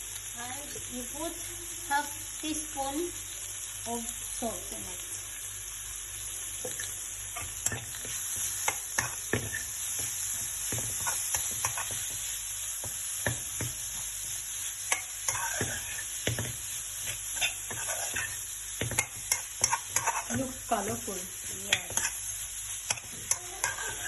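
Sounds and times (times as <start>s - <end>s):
vegetables sizzling in oil: 0.0s - 24.0s
spatula knocking and scraping pan: 6.6s - 14.2s, 14.8s - 22.2s, 22.8s - 24.0s.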